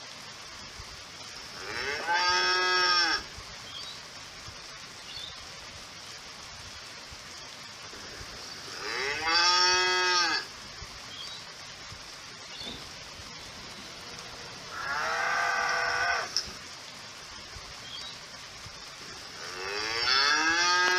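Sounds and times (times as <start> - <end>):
faint background hiss: 0.0 - 20.9
cow mooing: 14.7 - 16.4.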